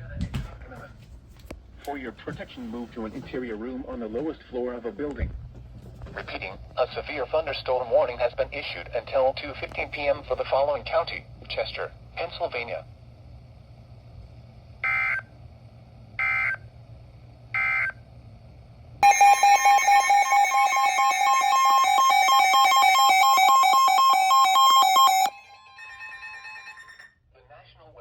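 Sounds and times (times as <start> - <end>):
data tone bursts: 19.0 - 27.1
two-tone attention signal: 19.0 - 27.1.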